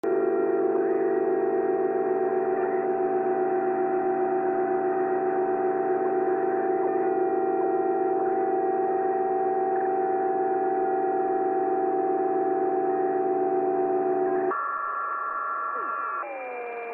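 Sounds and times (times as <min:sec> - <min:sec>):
steady radio whistling tones: 0:00.1 - 0:16.9
radio static: 0:14.2 - 0:16.9.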